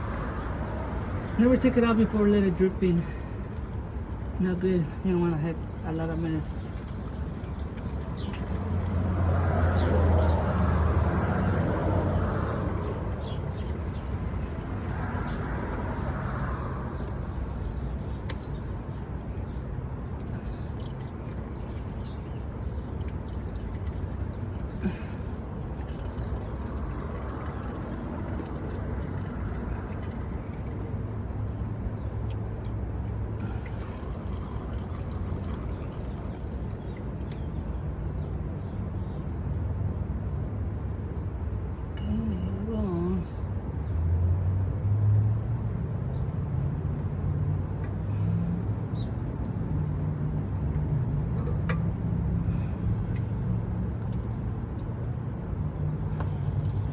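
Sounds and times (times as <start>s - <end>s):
oil dripping into a pan: 0.0s - 16.6s, 19.2s - 37.8s, 51.3s - 55.0s, 56.1s - 56.9s.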